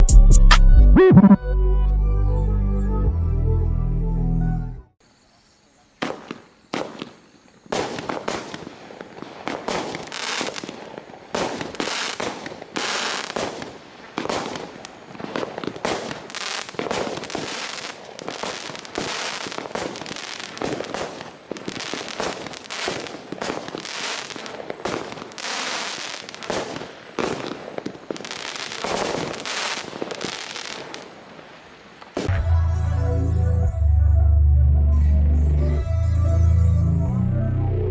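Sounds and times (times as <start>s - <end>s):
fireworks shots and bangs: 6.0s - 31.3s.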